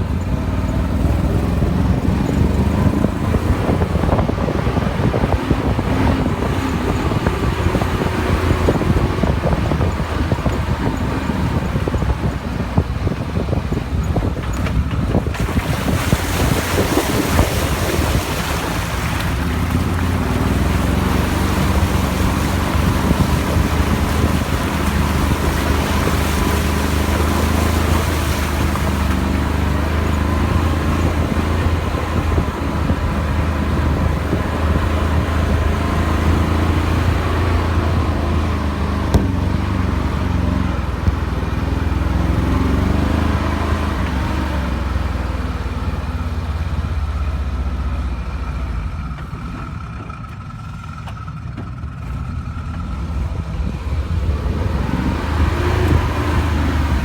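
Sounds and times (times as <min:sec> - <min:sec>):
off-road vehicle engine rumbling: 0:00.0 - 0:57.0.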